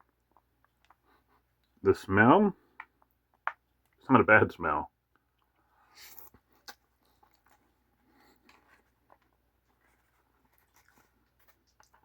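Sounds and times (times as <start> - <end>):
quiet chewing: 0.0 - 1.8, 5.0 - 12.0
soft rustle: 7.0 - 12.0.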